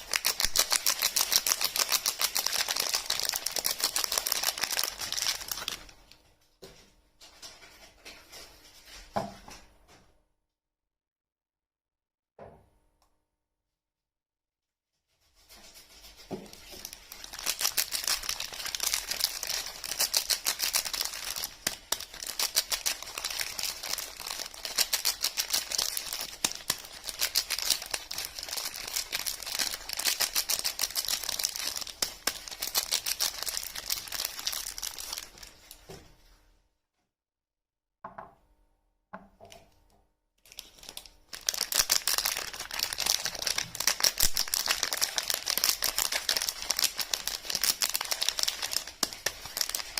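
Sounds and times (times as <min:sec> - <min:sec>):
soap wrapper crinkling and tearing: 0:00.0 - 0:06.2, 0:15.8 - 0:35.9, 0:40.4 - 0:49.9.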